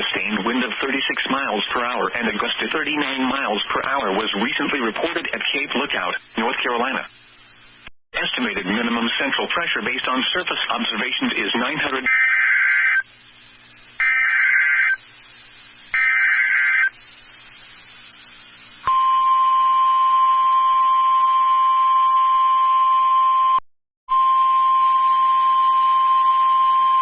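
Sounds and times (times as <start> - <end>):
warbling data tones: 13.8 - 19.1.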